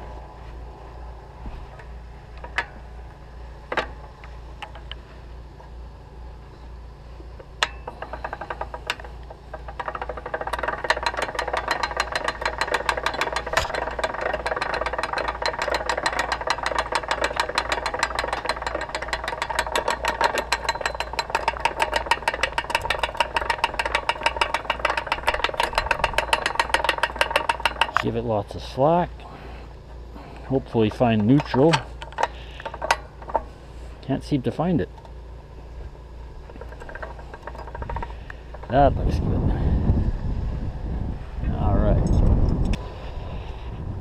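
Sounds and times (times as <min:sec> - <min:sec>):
tractor engine running: 0:00.0 - 0:44.0
metal clanks: 0:01.6 - 0:05.0, 0:07.4 - 0:28.2, 0:30.6 - 0:33.6, 0:36.3 - 0:39.0.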